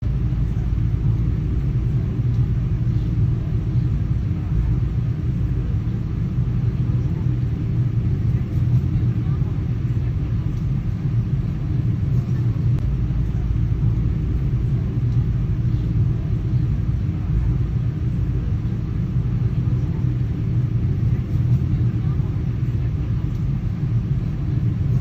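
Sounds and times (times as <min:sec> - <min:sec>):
airplane low rumble: 0:00.0 - 0:25.0.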